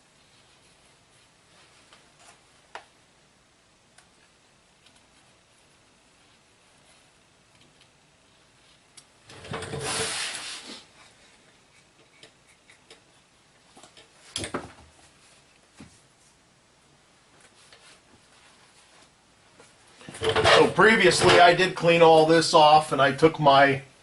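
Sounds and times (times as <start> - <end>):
scraping rub on metal parts: 9.7 - 13.5.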